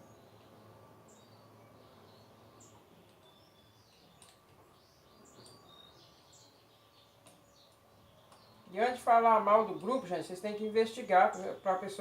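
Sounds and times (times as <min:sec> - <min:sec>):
faint bird chirps: 0:00.0 - 0:09.0.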